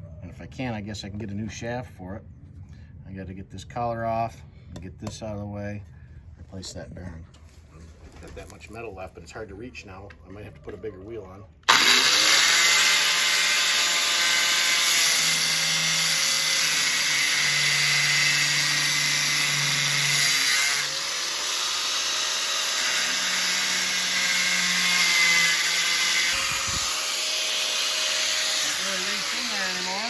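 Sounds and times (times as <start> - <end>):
grinder cutting steel: 11.7 - 30.0.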